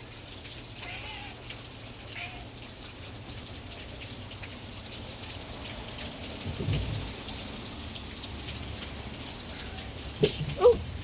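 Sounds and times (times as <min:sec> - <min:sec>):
heavy rain falling: 0:00.0 - 0:11.0.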